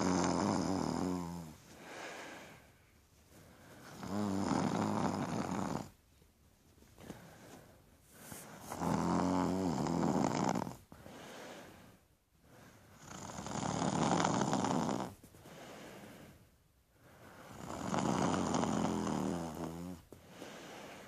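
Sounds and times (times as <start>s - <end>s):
person snoring: 0.0s - 2.6s, 3.8s - 6.0s, 8.5s - 10.8s, 12.9s - 15.2s, 17.3s - 20.0s
soft out-breath: 1.7s - 4.0s, 7.0s - 8.7s, 10.9s - 12.9s, 15.4s - 17.6s, 20.1s - 21.0s.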